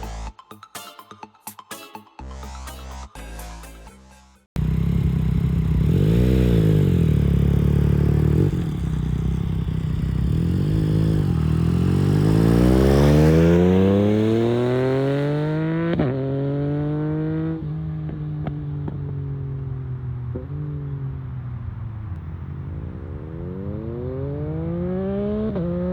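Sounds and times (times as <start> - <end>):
motorcycle engine revving: 4.5 - 21.4, 22.8 - 25.9
exhaust crackles: 4.6 - 15.1.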